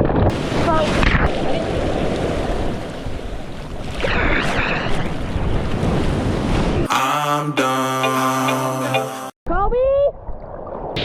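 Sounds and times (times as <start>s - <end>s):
wind buffeting microphone: 0.0s - 6.9s
ocean surf breaking on beach: 0.3s - 9.2s.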